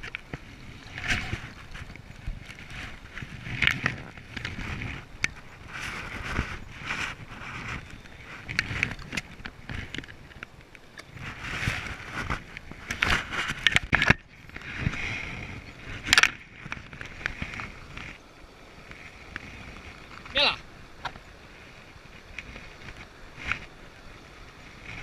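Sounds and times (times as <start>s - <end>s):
microphone handling noise: 0.0s - 10.5s, 11.1s - 18.2s.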